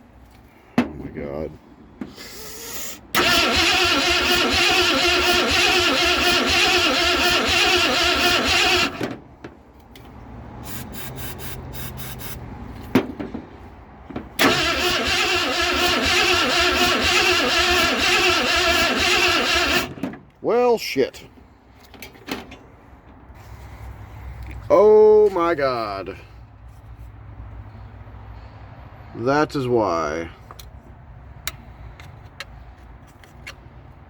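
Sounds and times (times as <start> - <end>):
starter motor cranking engine: 2.4 - 9.2, 14.4 - 20.0.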